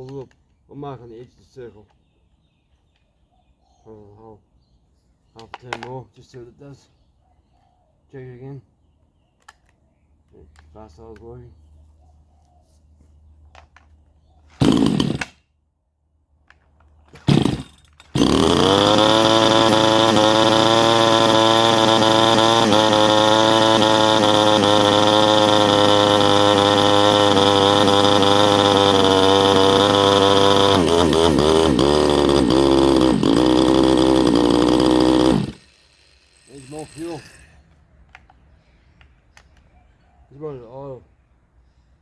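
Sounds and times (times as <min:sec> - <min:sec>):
chainsaw engine pull-started: 0:14.5 - 0:15.4, 0:17.0 - 0:37.7.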